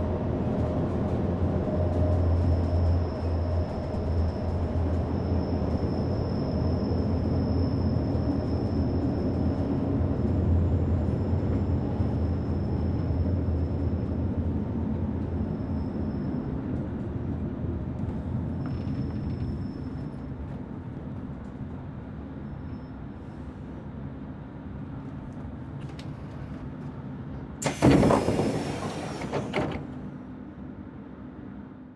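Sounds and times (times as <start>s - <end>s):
train rumble with thin whine: 0.0s - 31.9s
train doors hissing open: 25.8s - 26.8s, 27.6s - 30.2s.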